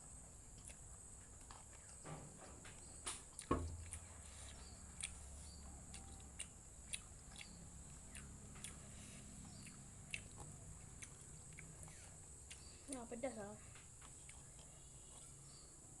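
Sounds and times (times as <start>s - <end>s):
faint chewing: 0.0s - 15.9s.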